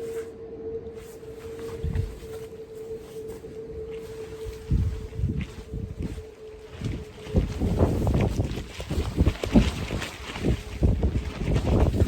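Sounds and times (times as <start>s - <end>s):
steady tone: 0.0s - 9.3s
wind buffeting microphone: 1.5s - 12.0s.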